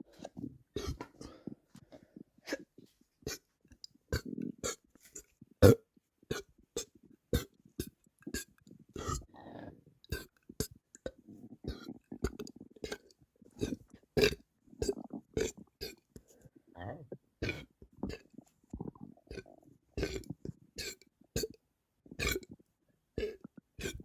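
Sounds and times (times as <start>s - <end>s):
person burping: 5.6s - 7.5s.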